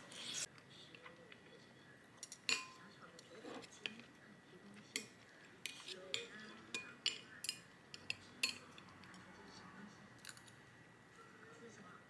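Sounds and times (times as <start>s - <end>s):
cutlery clinking against dishes: 2.2s - 4.0s, 4.9s - 9.2s, 10.2s - 10.6s.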